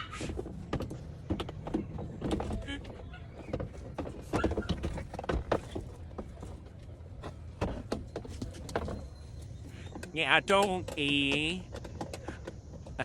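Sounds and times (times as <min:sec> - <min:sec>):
sharp plastic clicks and knocks: 0:09.9 - 0:13.0.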